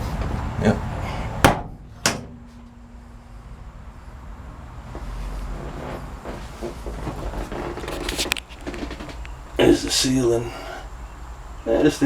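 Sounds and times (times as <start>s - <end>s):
low steady rumble: 0.0s - 12.0s
metal door clunk: 1.4s - 2.8s
handling knocks and rustles: 4.9s - 9.4s.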